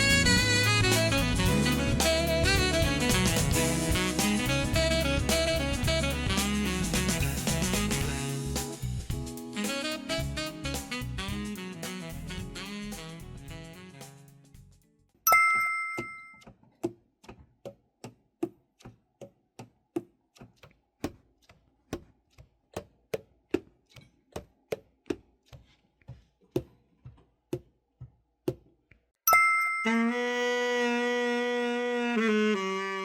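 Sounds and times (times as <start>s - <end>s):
saxophone playing: 0.0s - 8.6s, 9.6s - 14.3s, 29.8s - 33.0s
bright ding: 15.3s - 16.4s, 29.3s - 30.0s.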